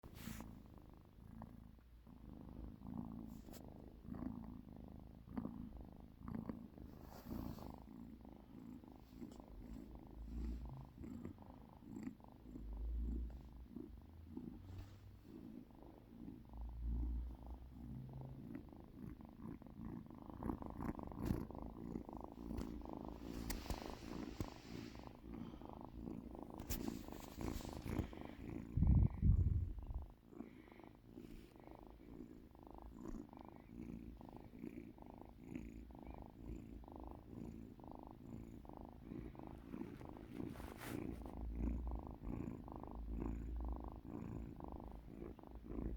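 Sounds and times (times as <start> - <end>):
cat purring: 0.0 - 45.9.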